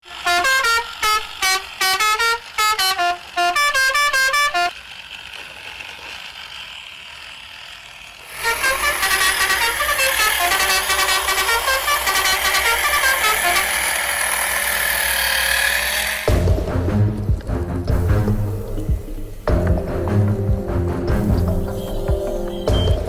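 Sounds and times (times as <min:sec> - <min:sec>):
musical horn beeping a tune: 0:00.0 - 0:04.8, 0:08.3 - 0:14.2, 0:16.3 - 0:23.0
music: 0:16.3 - 0:23.0.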